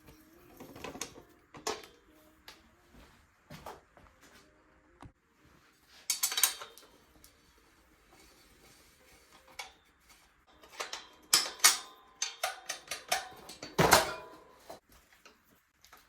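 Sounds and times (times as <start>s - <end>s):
metal bicycle parts clinking: 6.0s - 7.5s, 8.1s - 16.0s.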